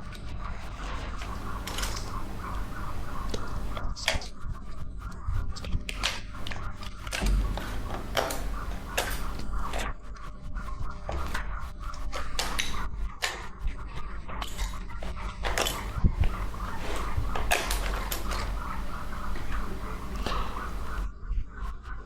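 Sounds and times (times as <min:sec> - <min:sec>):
low hum: 0:07.2 - 0:09.8, 0:15.5 - 0:21.1.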